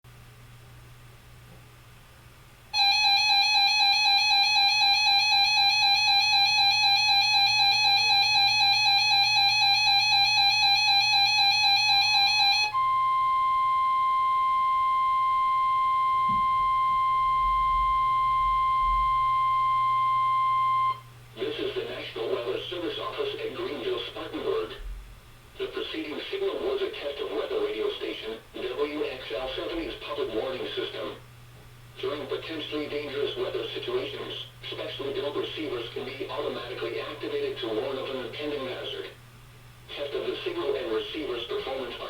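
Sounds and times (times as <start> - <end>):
buzzy warbling alarm tone: 2.8 - 21.0
steady warning alarm tone: 2.8 - 21.6.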